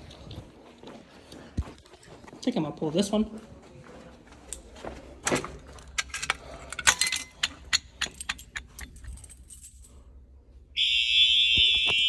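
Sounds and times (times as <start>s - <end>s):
metal keys jangling: 5.6s - 10.1s
fire alarm steady tone: 10.8s - 12.0s.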